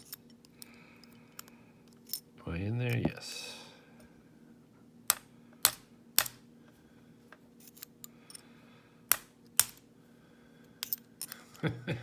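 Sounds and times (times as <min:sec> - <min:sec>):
metallic taps on a padlock: 0:05.1 - 0:06.4, 0:09.1 - 0:09.8.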